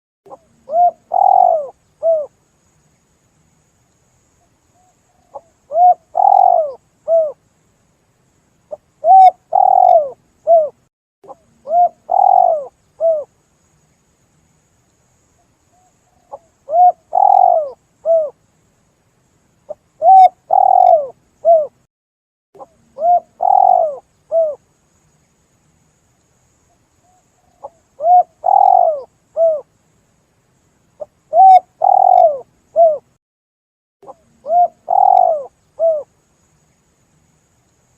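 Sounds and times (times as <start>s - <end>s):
dove cooing: 0.3s - 2.3s, 5.2s - 7.4s, 9.0s - 13.3s, 16.1s - 18.4s, 19.7s - 21.8s, 22.6s - 24.6s, 27.5s - 29.7s, 31.0s - 33.1s, 34.0s - 36.1s.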